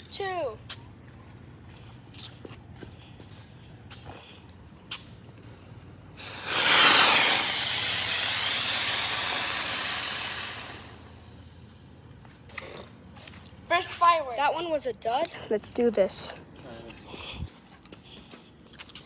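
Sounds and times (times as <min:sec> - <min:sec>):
firework hissing sparks: 0:06.2 - 0:11.4.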